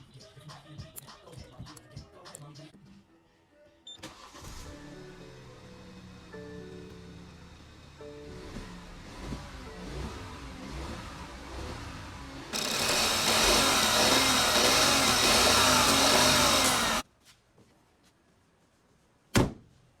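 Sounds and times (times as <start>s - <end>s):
car engine misfiring: 8.4s - 17.0s.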